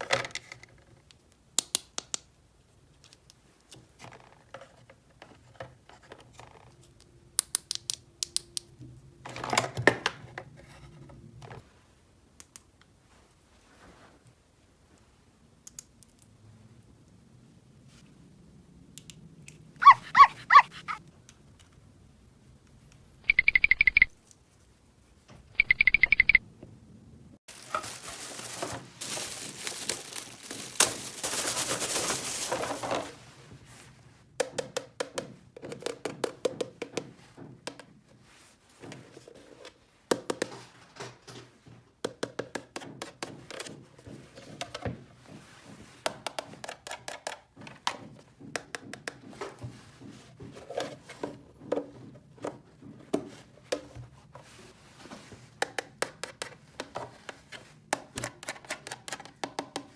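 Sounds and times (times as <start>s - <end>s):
plastic toy pieces rustling: 27.5s - 33.3s.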